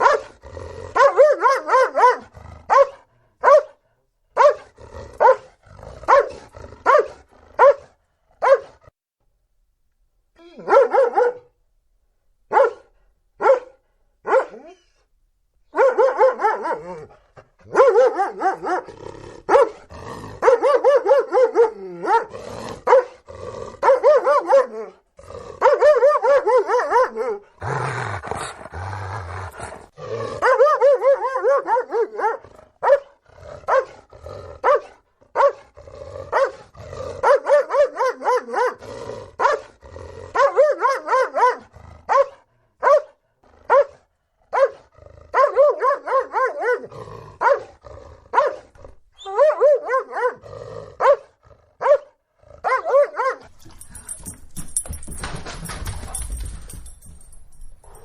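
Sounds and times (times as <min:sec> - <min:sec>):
dog growling: 0:00.0 - 0:01.0, 0:02.2 - 0:03.3, 0:04.6 - 0:07.6, 0:18.8 - 0:20.4, 0:21.8 - 0:23.8, 0:24.9 - 0:25.8, 0:27.3 - 0:30.5, 0:32.5 - 0:34.6, 0:35.7 - 0:37.2, 0:38.8 - 0:40.4, 0:44.9 - 0:45.4, 0:46.8 - 0:49.0, 0:50.3 - 0:52.6
dog barking: 0:00.0 - 0:08.9, 0:10.6 - 0:11.6, 0:12.5 - 0:14.8, 0:15.7 - 0:17.1, 0:17.7 - 0:18.9, 0:19.5 - 0:23.2, 0:23.8 - 0:25.0, 0:25.6 - 0:28.6, 0:29.5 - 0:34.0, 0:34.6 - 0:50.4, 0:51.0 - 0:54.2.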